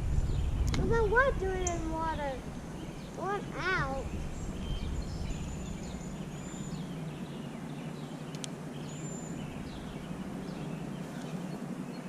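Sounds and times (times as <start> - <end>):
birds chirping: 0.0 - 12.0.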